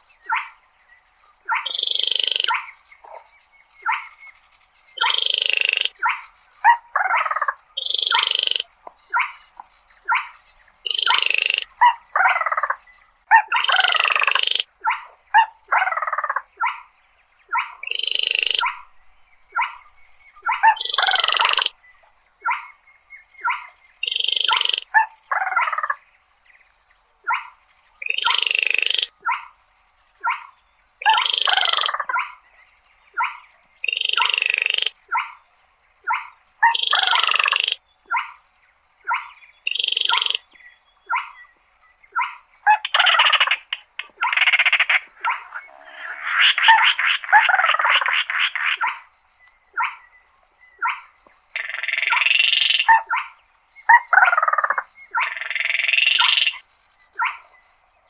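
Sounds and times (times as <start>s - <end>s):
crake calling: 1.4s - 3.2s, 5.0s - 16.9s, 17.5s - 21.8s, 22.4s - 26.0s, 27.2s - 29.6s, 30.2s - 32.4s, 33.1s - 35.4s, 36.0s - 38.4s, 39.0s - 41.4s, 50.8s - 57.6s.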